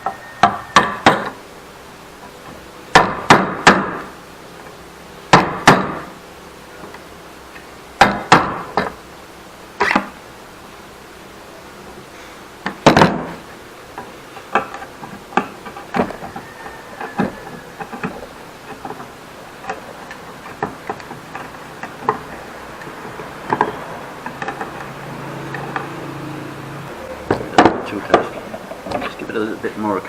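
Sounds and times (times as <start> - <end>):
mallet striking wood chisel: 2.9 - 4.0, 5.3 - 6.1, 8.0 - 8.7.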